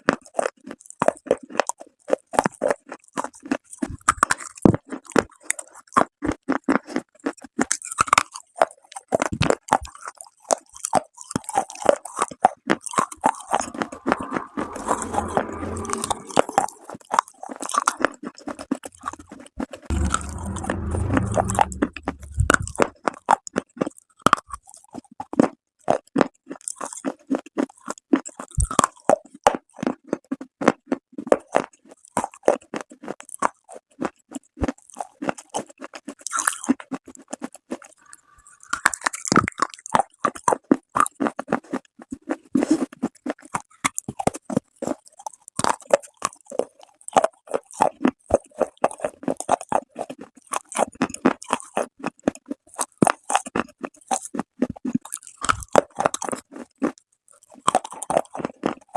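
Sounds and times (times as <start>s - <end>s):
heavy grinding chews: 0.0s - 58.9s.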